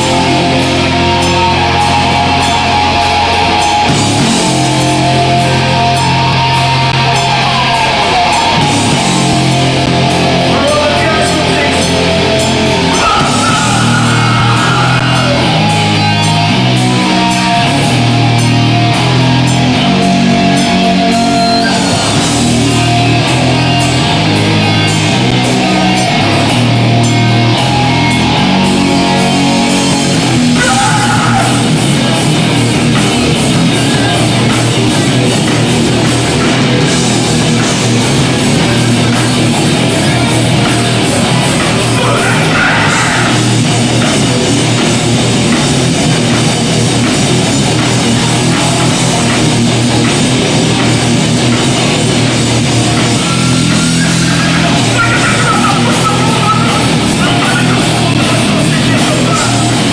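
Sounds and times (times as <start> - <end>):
bass guitar: 0.0 - 59.9
distorted electric guitar riffs: 0.0 - 59.9.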